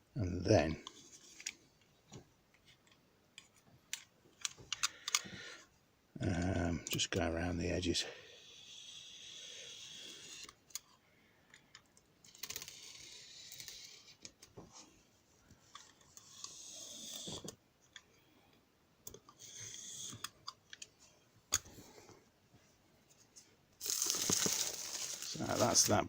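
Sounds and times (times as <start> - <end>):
cardboard scraping and rustling: 23.8 - 26.0.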